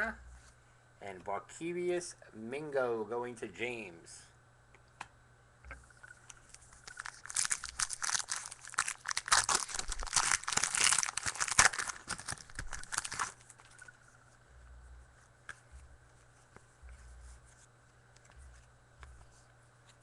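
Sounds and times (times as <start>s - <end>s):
wrapper crinkling and tearing: 6.5s - 13.9s.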